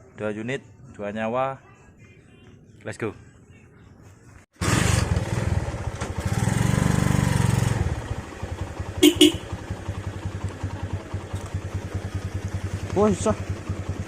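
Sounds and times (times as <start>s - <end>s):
motorcycle engine pulling away: 4.6s - 14.0s
short horn beeps: 9.0s - 9.6s.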